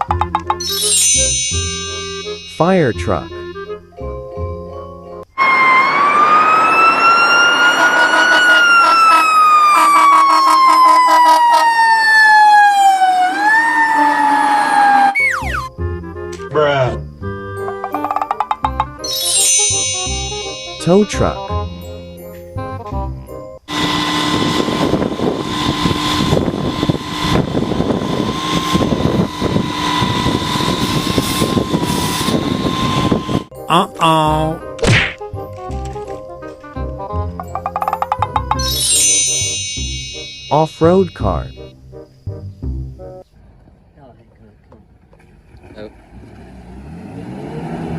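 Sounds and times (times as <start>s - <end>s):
quick plinking notes: 0.0s - 3.8s, 17.6s - 22.5s, 37.3s - 41.7s
constant high whine: 1.4s - 3.9s, 5.3s - 11.2s, 23.6s - 33.5s, 37.5s - 41.9s
fire truck siren wailing: 5.3s - 15.8s, 23.7s - 33.5s
truck engine rattling rumble: 23.7s - 33.5s.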